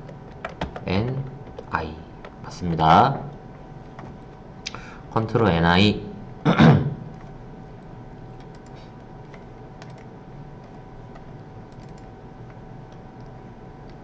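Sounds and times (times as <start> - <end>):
keyboard keystrokes: 0.0 - 2.4, 8.4 - 14.0
faint electrical hum: 0.0 - 14.0.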